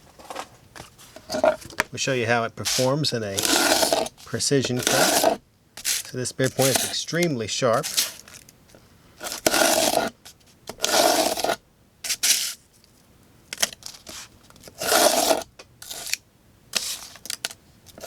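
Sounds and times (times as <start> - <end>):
knife cutting cardboard: 2.6 - 8.2, 9.2 - 12.6, 14.0 - 16.2.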